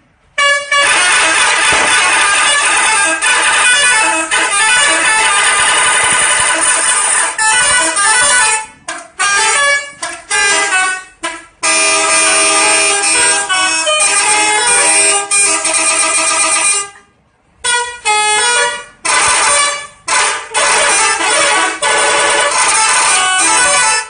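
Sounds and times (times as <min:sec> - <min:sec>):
multi-tone musical air horn: 0:00.3 - 0:24.0.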